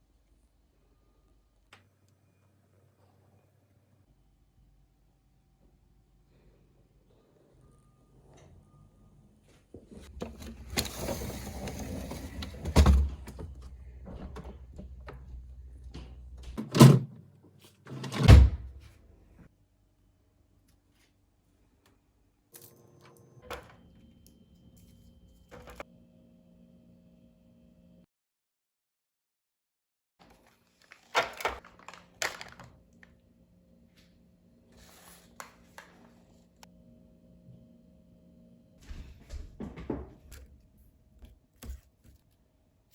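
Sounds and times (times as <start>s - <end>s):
items knocking and clattering: 30.9s - 32.7s, 38.8s - 40.5s.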